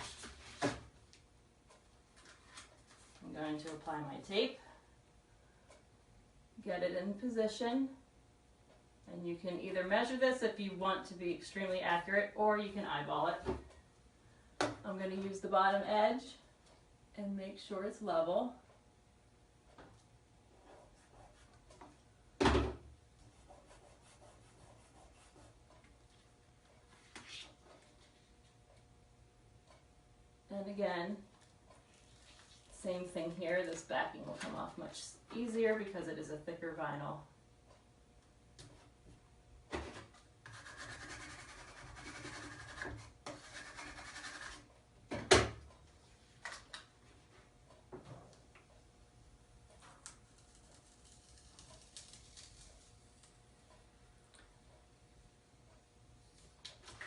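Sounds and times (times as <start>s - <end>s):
hands rubbing and handling tape: 49.8s - 53.4s
backing paper peeling off decal: 50.0s - 53.3s.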